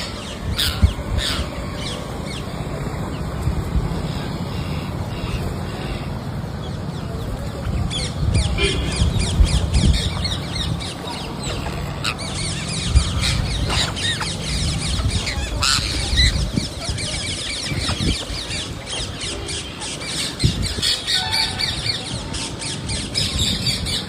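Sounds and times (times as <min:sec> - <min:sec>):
parrots squawking: 0:00.0 - 0:02.4, 0:07.9 - 0:24.0
steady low rumble: 0:00.0 - 0:23.9.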